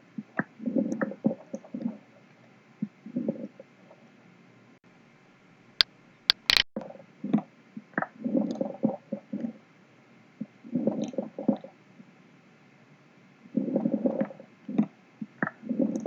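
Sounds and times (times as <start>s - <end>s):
sharp clicks: 6.3s - 6.7s.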